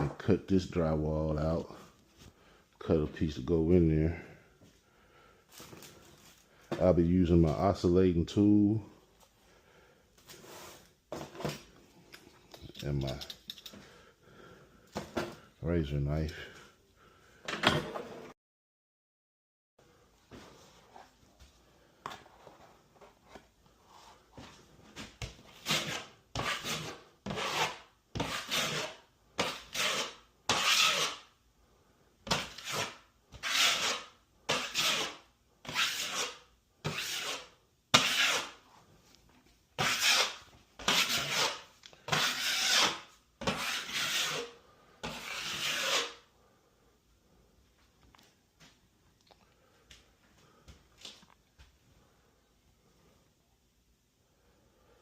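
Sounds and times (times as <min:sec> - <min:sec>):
knife cutting through drywall: 0:25.5 - 0:31.3, 0:32.3 - 0:38.6, 0:39.8 - 0:46.2.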